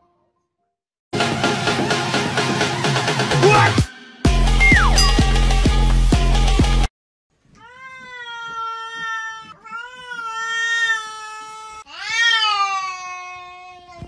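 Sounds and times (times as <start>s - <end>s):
cat meowing: 7.6s - 14.0s.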